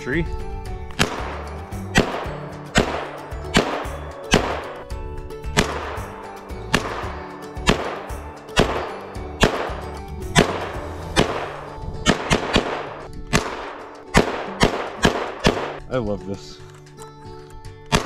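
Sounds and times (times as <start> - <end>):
background music: 0.0 - 18.0
rifle shots ringing out: 1.0 - 4.8, 5.6 - 9.8, 10.4 - 15.8.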